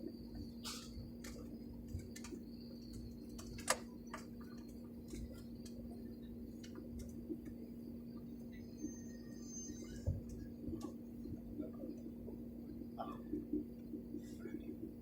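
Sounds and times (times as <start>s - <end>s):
airliner cabin hum: 0.0s - 15.0s
faint clicks and ticks: 1.2s - 8.3s, 10.0s - 12.4s.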